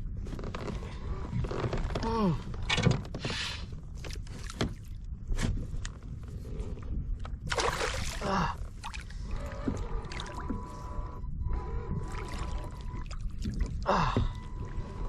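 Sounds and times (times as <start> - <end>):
wind on microphone: 4.7 - 15.0
knocks and thunks on kayak: 12.8 - 14.8.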